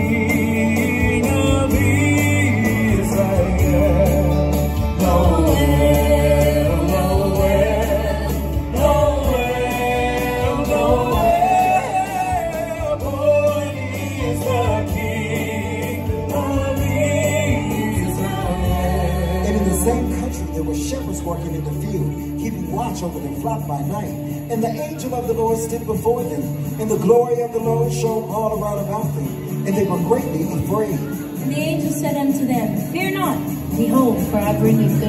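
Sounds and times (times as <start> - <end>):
voices singing christmas song: 0.0 - 20.9
sustained low bass: 0.0 - 27.0.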